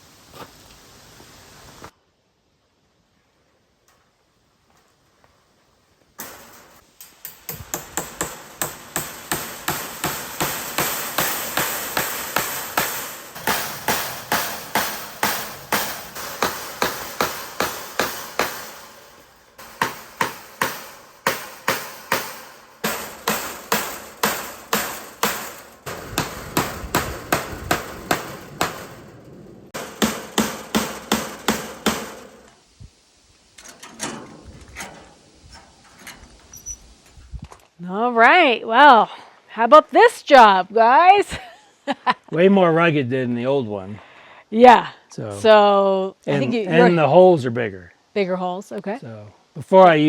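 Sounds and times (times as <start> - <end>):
hammer striking into wood: 6.2 - 32.5.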